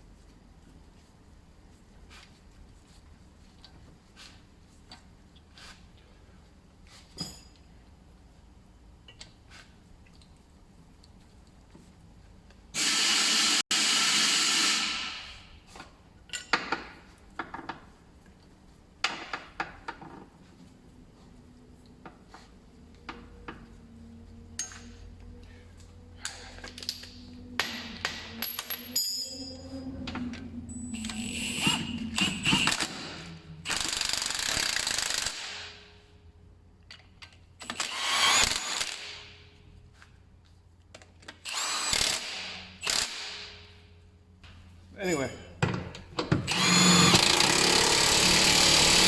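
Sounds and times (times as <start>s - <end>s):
power tool driving bolts: 31.0s - 35.7s, 37.6s - 39.2s, 41.4s - 43.5s, 46.3s - 49.0s.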